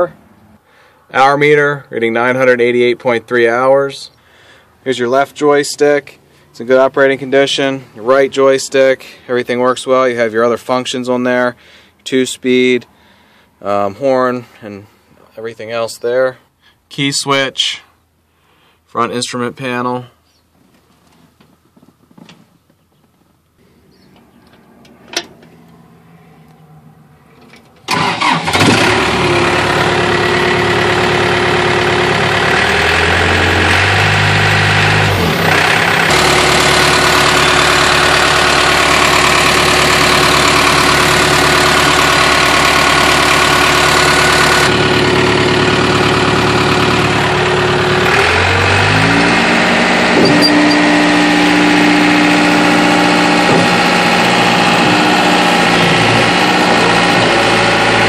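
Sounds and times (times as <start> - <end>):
diesel engine cranking and running: 23.9 - 58.0.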